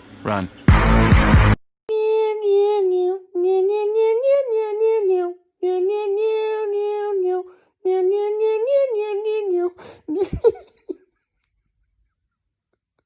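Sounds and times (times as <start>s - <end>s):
person humming wordless tune: 1.9s - 10.6s.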